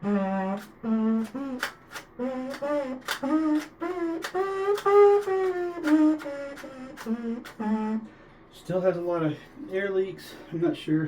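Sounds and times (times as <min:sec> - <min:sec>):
plastic trumpet playing a tune: 0:00.0 - 0:08.1
sharp clicks: 0:00.6 - 0:07.6.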